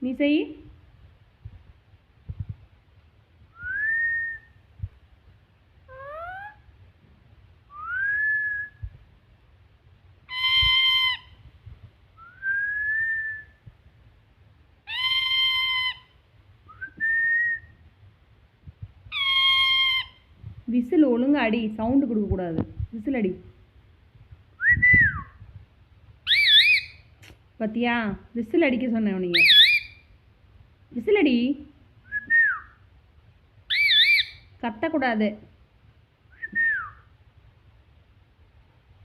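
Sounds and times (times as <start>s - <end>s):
parrot whistling: 3.6s - 4.6s, 5.9s - 6.6s, 7.7s - 8.8s, 10.3s - 11.3s, 12.2s - 13.6s, 14.9s - 16.1s, 19.1s - 20.2s, 26.3s - 27.1s, 29.4s - 30.0s, 33.7s - 34.4s, 36.3s - 37.1s
parrot harsh calls: 5.9s - 6.6s, 10.3s - 11.4s, 14.8s - 16.2s, 19.1s - 20.3s, 26.3s - 27.0s, 29.4s - 30.0s, 33.7s - 34.4s.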